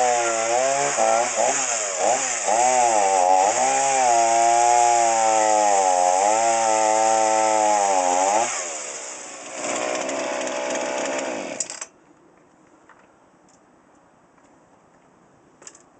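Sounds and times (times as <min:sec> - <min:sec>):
chainsaw running at high revs: 0:00.0 - 0:11.7.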